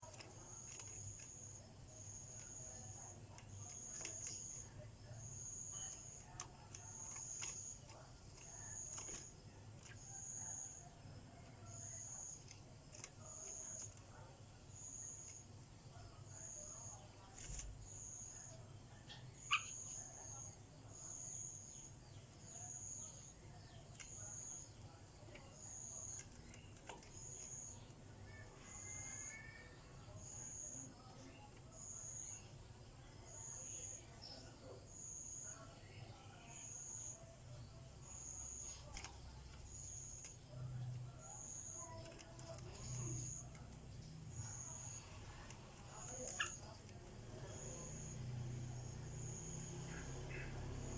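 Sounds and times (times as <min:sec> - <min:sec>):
faint clicks: 0:00.0 - 0:01.6, 0:02.2 - 0:04.8, 0:05.6 - 0:10.2, 0:11.4 - 0:14.2, 0:22.5 - 0:29.4, 0:38.1 - 0:48.7
thin high-pitched chirp: 0:45.9 - 0:46.7.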